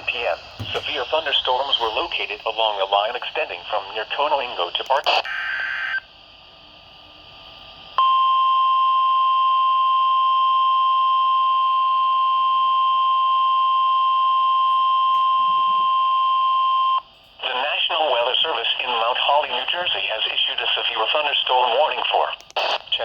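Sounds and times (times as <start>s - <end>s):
low radio hiss: 0.0s - 8.0s, 17.0s - 23.0s
steady warning alarm tone: 8.0s - 17.1s.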